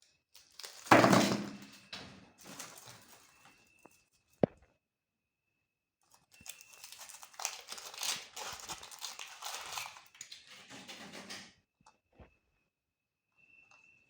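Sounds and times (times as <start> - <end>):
meat grinder crushing eggshells: 6.4 - 10.9.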